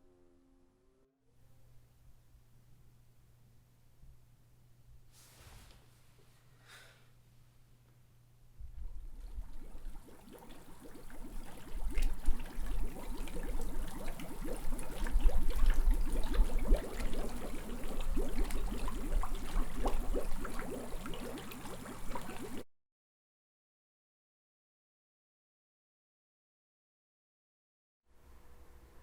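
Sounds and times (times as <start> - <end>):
running water splashing and gurgling: 9.1 - 22.6.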